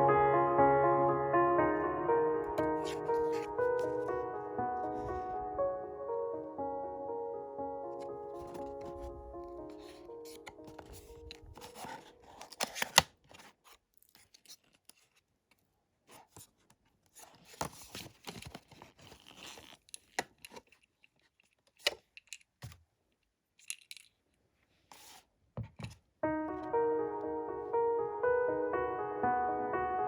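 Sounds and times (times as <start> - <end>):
papery rustling and tearing: 9.7 - 15.2.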